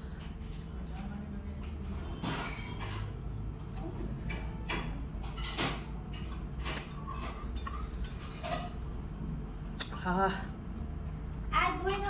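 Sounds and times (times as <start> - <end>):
steady low hum: 0.0 - 12.0
dishes and cutlery clinking: 0.2 - 9.0.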